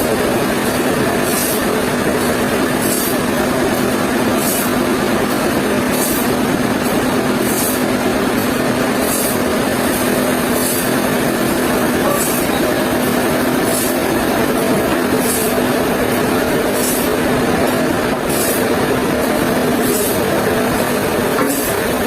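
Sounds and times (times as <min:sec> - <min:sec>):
sawmill machinery humming: 0:00.0 - 0:22.0.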